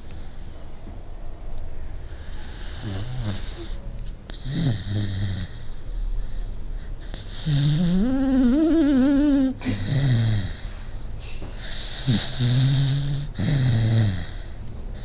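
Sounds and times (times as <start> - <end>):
dog snoring: 2.1 - 10.7, 11.6 - 15.0.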